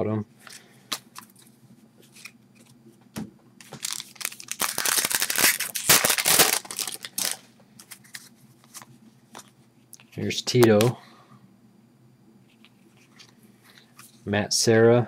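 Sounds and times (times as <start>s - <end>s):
foil wrapper tearing and crackling: 3.6s - 7.4s.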